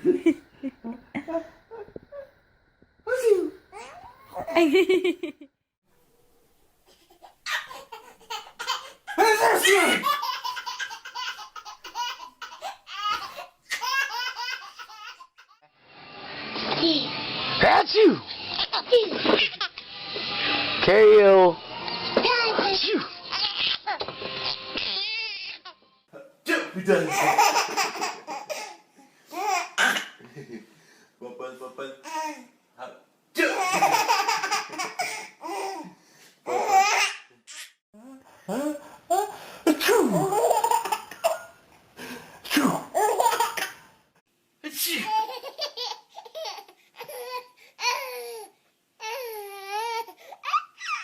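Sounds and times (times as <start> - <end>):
baby laughing: 3.8 - 5.2, 6.9 - 15.7, 18.5 - 19.8, 22.2 - 25.8, 27.1 - 29.9, 33.5 - 35.9, 36.5 - 37.7, 40.0 - 41.6, 42.9 - 43.8, 44.9 - 51.0.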